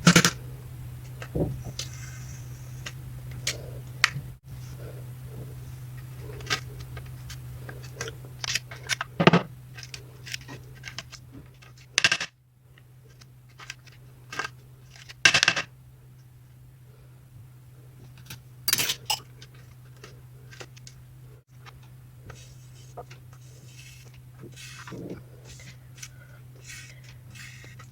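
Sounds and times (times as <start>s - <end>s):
low hum: 0.0s - 15.0s
kitchen items clinking and scraping: 18.2s - 20.8s
kitchen items clattering: 18.7s - 19.7s.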